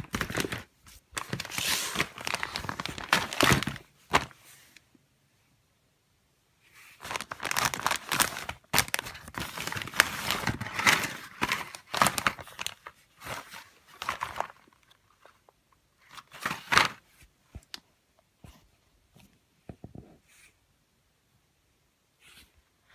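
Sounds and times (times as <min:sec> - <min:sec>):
packaging rustling and crinkling: 0:00.0 - 0:04.8, 0:06.9 - 0:17.8.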